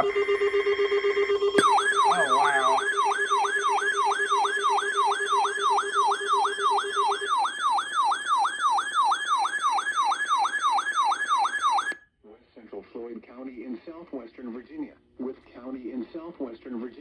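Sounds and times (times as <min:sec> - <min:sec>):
whooping alarm siren: 0:00.0 - 0:12.0.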